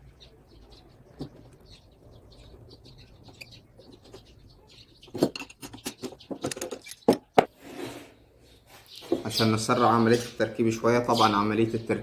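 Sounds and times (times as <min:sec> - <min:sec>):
faint bird chirps: 0:00.0 - 0:07.3.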